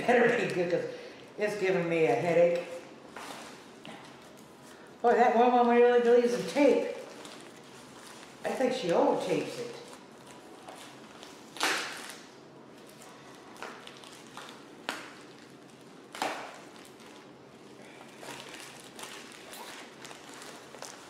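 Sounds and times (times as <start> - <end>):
packaging crinkling: 3.1 - 21.0
rustling: 6.2 - 8.7, 9.5 - 21.0
packing tape ripping: 9.8 - 17.3, 18.0 - 21.0.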